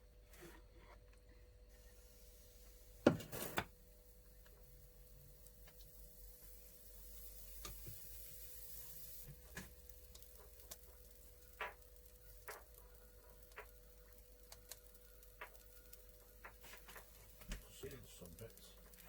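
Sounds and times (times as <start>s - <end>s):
faint irregular clicks: 9.3s - 19.0s.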